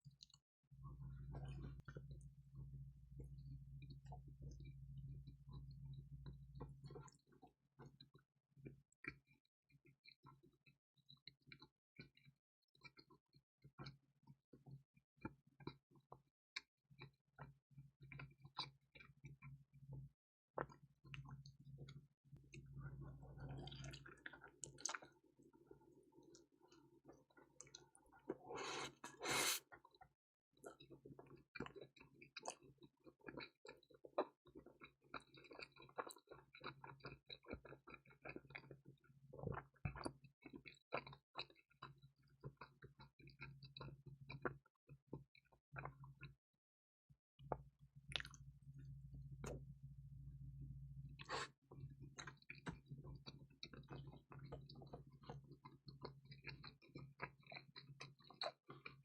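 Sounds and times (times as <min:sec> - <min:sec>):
person chewing crispy pizza: 0:22.6 - 0:46.4, 0:48.1 - 0:48.4, 0:51.2 - 0:59.0.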